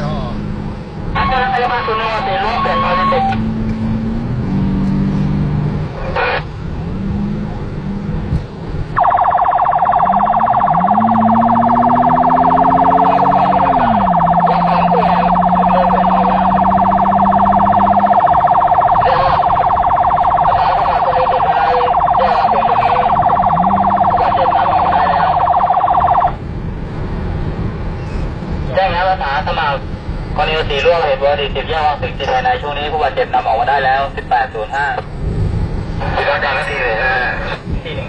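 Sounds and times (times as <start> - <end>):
siren pulsing tone: 1.2 - 3.6, 9.0 - 26.4.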